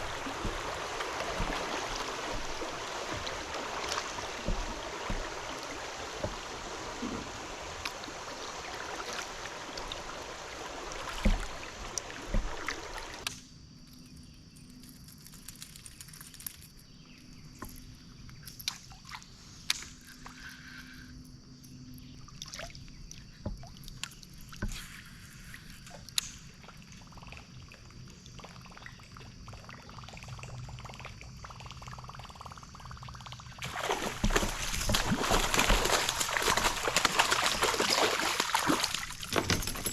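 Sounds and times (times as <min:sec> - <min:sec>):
water sloshing around kayak: 0:00.0 - 0:13.3, 0:33.5 - 0:39.9.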